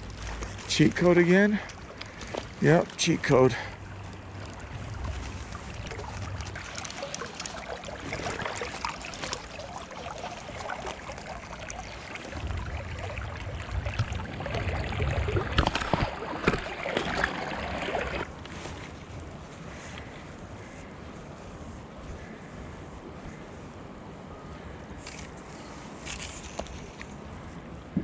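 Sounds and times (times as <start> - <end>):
river water rushing: 0.0 - 18.3
wind rumble on microphone: 3.8 - 6.8, 12.0 - 24.3
short sharp splashes: 4.4 - 18.3.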